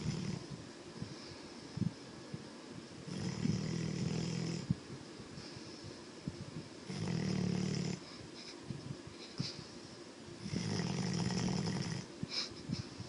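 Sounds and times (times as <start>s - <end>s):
dog snoring: 0.0s - 0.5s, 3.1s - 4.7s, 6.8s - 8.1s, 10.4s - 12.1s.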